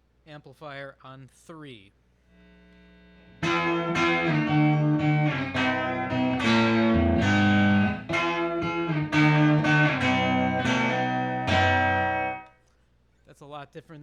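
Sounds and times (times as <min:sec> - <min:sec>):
electric guitar through amplifier: 0:02.3 - 0:12.6.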